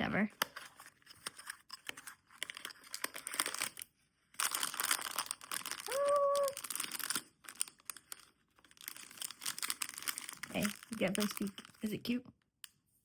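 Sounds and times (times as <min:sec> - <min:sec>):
packaging tearing and crinkling: 0:01.3 - 0:03.8, 0:04.4 - 0:11.9.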